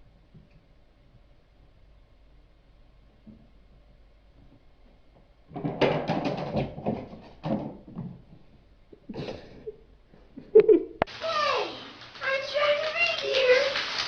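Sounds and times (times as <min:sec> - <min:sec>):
knocks and rattles of cupboard: 0:05.5 - 0:08.5.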